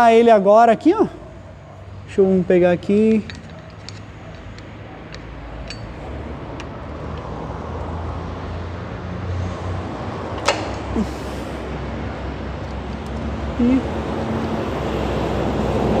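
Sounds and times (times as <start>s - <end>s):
low vehicle rumble: 0.9s - 16.0s
light clicks: 2.8s - 7.9s.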